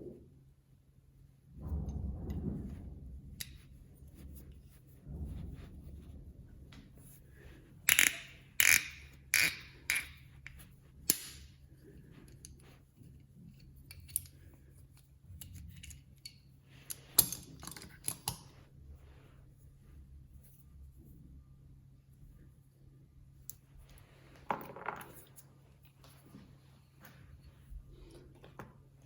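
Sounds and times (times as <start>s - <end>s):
tool parts clicking and knocking: 7.9s - 11.5s, 13.9s - 14.4s, 15.4s - 18.5s.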